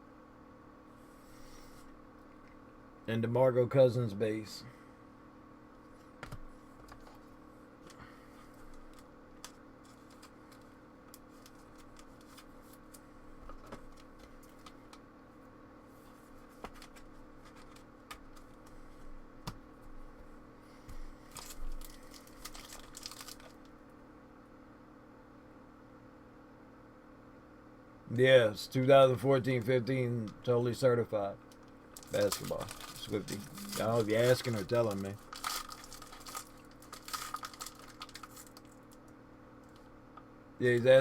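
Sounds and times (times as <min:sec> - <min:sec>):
faint steady hum: 0:00.0 - 0:41.0
cards clicking and rustling: 0:16.6 - 0:18.5, 0:32.0 - 0:38.7
foil wrapper crinkling and tearing: 0:21.3 - 0:23.7, 0:31.6 - 0:39.0.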